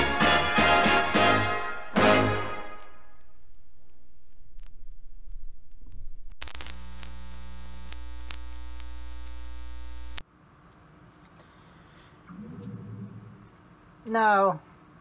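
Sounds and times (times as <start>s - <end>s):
electrical mains hum buzzing: 3.2s - 15.0s.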